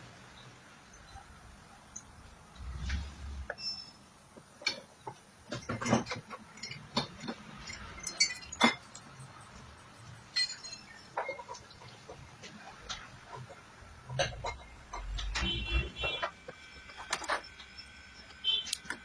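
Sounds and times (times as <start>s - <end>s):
clinks of small parts and tools: 1.9s - 12.2s.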